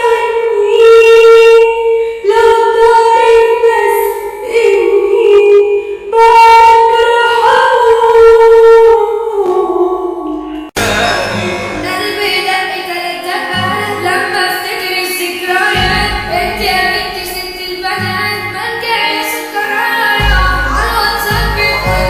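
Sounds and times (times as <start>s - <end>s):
woman singing: 0.0s - 10.8s, 11.6s - 22.0s
instrumental backing: 10.7s - 22.0s
deep bass: 10.8s - 12.0s, 15.8s - 17.4s, 20.2s - 22.0s.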